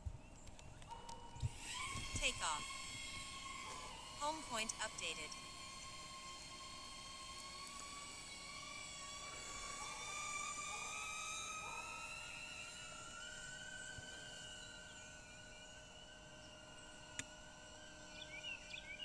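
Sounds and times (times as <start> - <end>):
drone propellers whining: 0.4 - 19.0.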